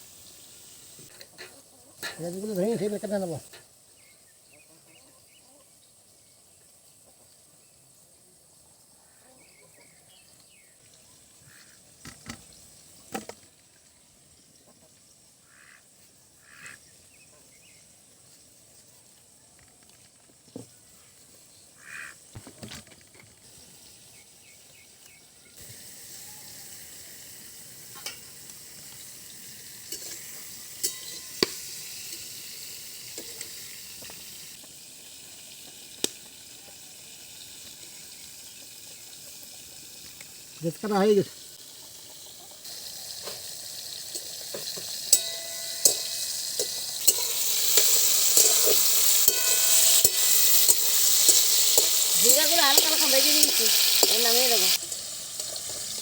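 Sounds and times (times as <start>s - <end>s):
vegetable slices sizzling in oil: 0.0s - 4.3s, 23.4s - 56.0s
clinks: 29.9s - 32.3s, 44.1s - 54.2s.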